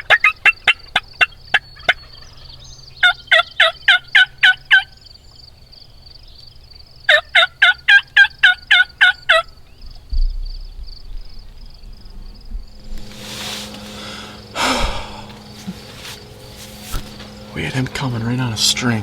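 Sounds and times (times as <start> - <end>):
turkey yelping: 0.0 - 5.0, 7.1 - 9.5.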